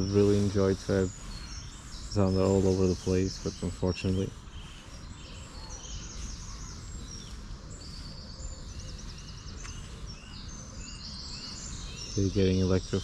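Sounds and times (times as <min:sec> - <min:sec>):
songbirds chirping and singing: 0:00.0 - 0:13.0.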